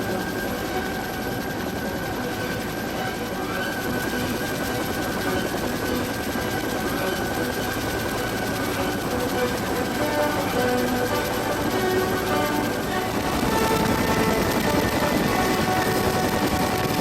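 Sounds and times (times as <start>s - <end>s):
helicopter rotor chop: 0.0s - 17.0s
high turbine whine: 0.0s - 17.0s.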